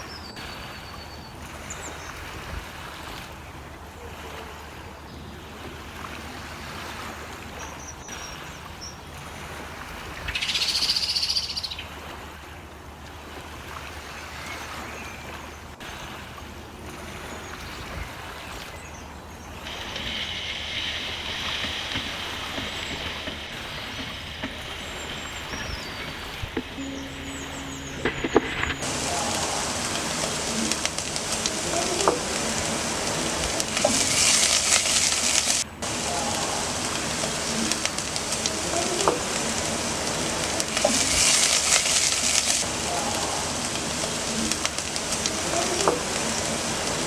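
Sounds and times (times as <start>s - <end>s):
steady sizzle: 19.4s - 47.0s
short loud hiss: 19.6s - 47.0s.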